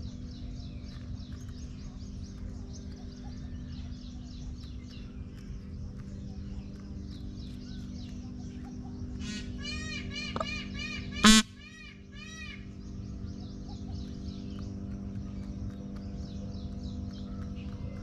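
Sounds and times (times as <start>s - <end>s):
small birds chirping: 0.0s - 18.0s
steady low hum: 0.0s - 18.0s.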